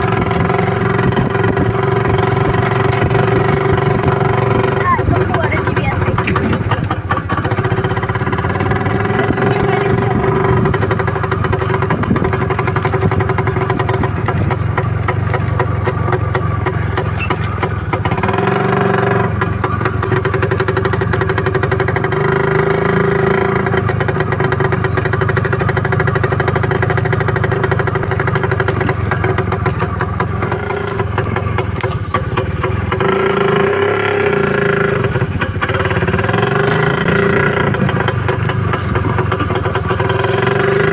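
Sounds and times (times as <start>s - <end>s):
two-stroke motorcycle engine running: 0.0s - 40.9s.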